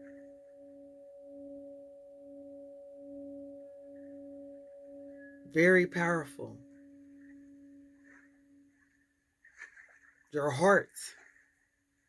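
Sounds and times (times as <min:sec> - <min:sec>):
layered steady pure tones: 0:00.0 - 0:09.2.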